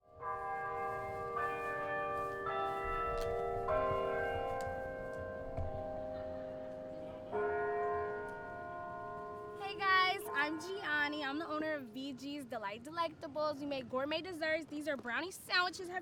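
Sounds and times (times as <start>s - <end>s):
bells chiming: 0.1s - 12.0s.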